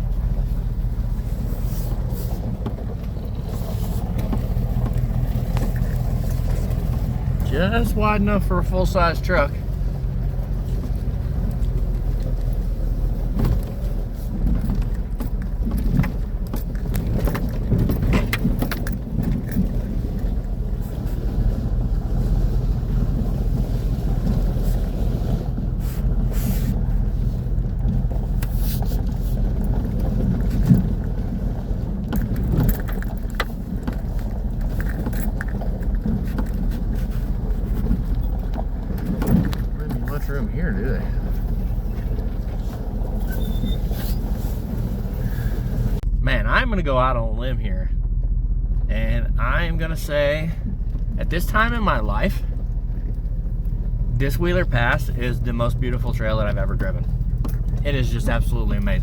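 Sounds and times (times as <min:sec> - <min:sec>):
truck engine humming: 0:00.0 - 0:59.0
truck clicks knocks and rattles: 0:02.5 - 0:07.5, 0:10.4 - 0:20.6, 0:27.6 - 0:40.1, 0:56.8 - 0:57.8.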